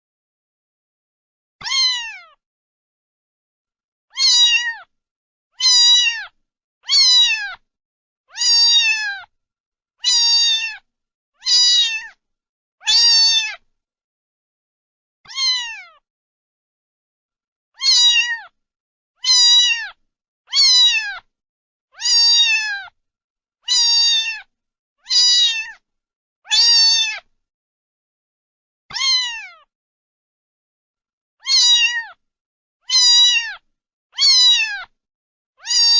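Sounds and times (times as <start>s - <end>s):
cat meowing: 1.6s - 2.4s, 4.1s - 4.9s, 5.6s - 7.6s, 8.3s - 9.3s, 10.0s - 12.2s, 12.8s - 13.6s, 15.3s - 16.0s, 17.8s - 18.6s, 19.2s - 21.3s, 22.0s - 23.0s, 23.6s - 25.8s, 26.5s - 27.3s, 28.9s - 29.7s, 31.4s - 32.2s, 32.8s - 35.0s, 35.6s - 35.9s.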